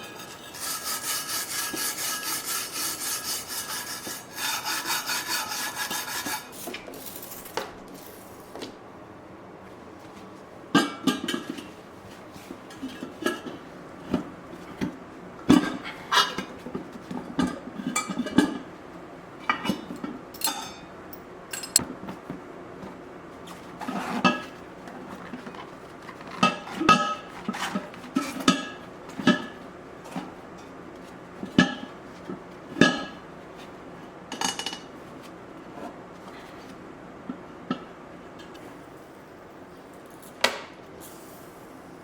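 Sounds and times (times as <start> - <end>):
metal tools clanking on metal: 21.5 - 21.8.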